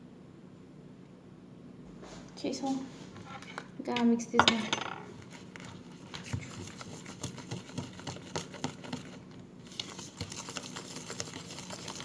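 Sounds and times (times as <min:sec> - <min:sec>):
utensil stirring batter in bowl: 0:05.1 - 0:12.0.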